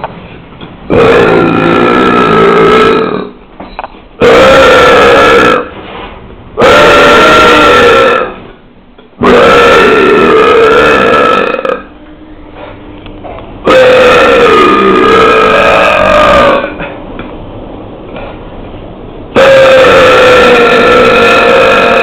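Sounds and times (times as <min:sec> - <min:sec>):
person belching: 0:00.9 - 0:03.4, 0:04.2 - 0:05.7, 0:06.6 - 0:08.5, 0:09.2 - 0:11.9, 0:13.7 - 0:16.9, 0:19.4 - 0:22.0.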